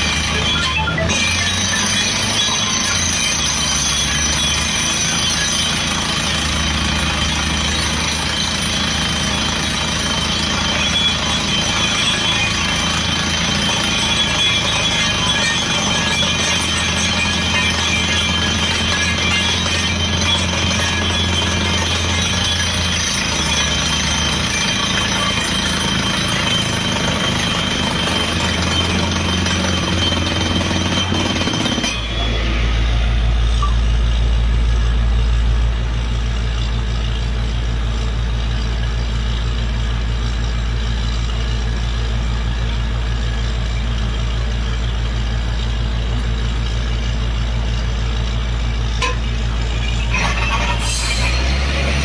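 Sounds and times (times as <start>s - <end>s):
diesel engine droning: 0.0s - 52.0s
bright clatter: 45.5s - 52.0s.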